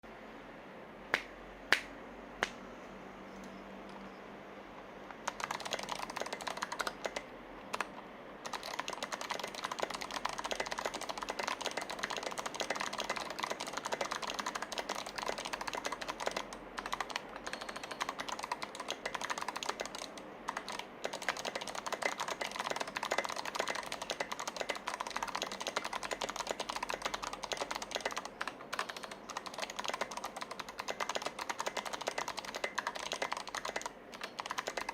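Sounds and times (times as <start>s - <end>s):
clicky keyboard typing: 5.1s - 34.9s.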